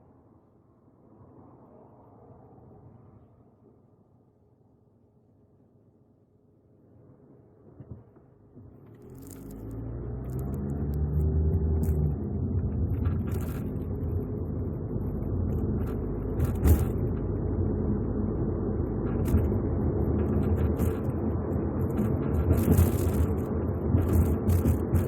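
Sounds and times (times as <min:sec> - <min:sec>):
car road rumble: 0:08.6 - 0:25.0
car knocks and rattles: 0:15.4 - 0:17.4.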